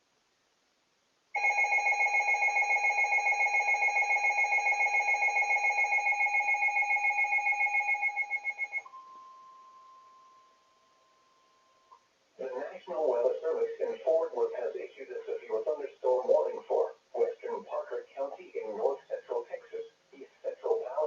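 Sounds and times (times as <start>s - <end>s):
rapidly pulsing alarm tone: 1.4s - 8.9s
faint steady single tone: 4.7s - 12.2s.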